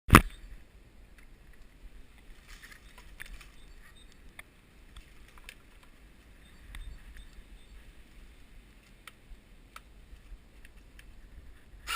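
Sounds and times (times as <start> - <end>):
sharp loud click: 0.1 - 0.4
faint scattered clicks: 0.1 - 11.9
soft rustling: 1.5 - 11.8.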